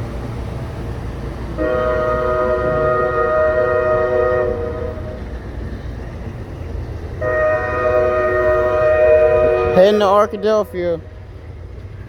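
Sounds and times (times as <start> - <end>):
low train rumble: 0.0 - 12.0
locomotive air horn chord: 1.6 - 5.4, 7.2 - 11.0.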